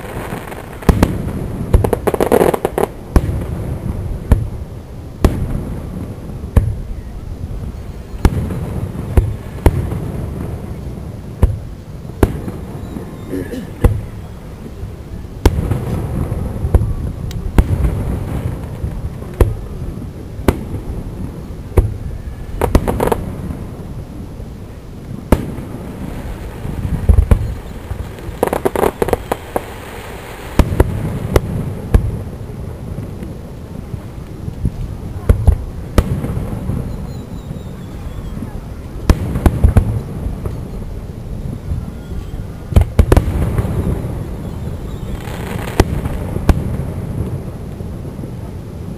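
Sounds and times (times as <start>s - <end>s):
fireworks bangs: 0.0s - 48.9s
fireworks crackling pops: 0.0s - 48.9s.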